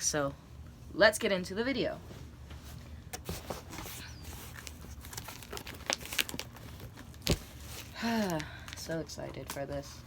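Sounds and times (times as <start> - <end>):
cardboard package crinkling: 3.6 - 9.0.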